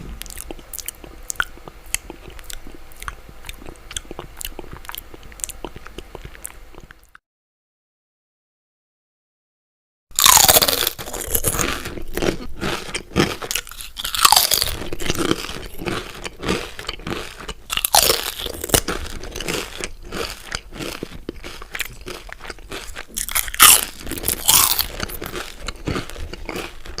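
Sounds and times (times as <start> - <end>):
crackly chewing: 0.1 - 7.2, 10.2 - 27.0
crunching chip bites: 10.2 - 27.0.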